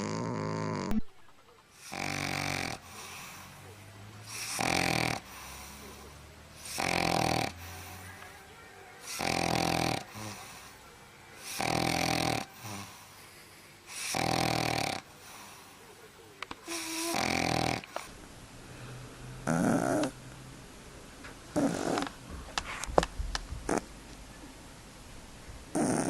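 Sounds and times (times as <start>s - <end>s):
pet snoring: 0.0s - 1.0s, 1.7s - 8.2s, 9.0s - 10.8s, 11.4s - 15.8s, 16.6s - 18.1s, 19.4s - 20.2s, 21.5s - 22.2s, 23.6s - 23.9s, 25.7s - 26.0s.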